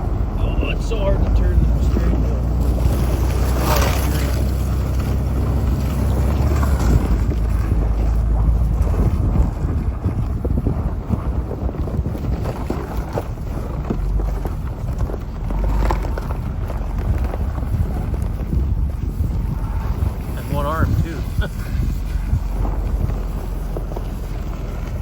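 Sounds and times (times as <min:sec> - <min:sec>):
tyres splashing through water: 0:00.0 - 0:10.0
vehicle engine drone: 0:00.0 - 0:25.0.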